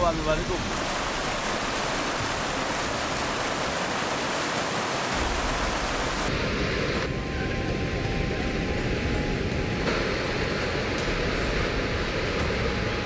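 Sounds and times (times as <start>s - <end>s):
rushing floodwater: 0.0s - 6.3s.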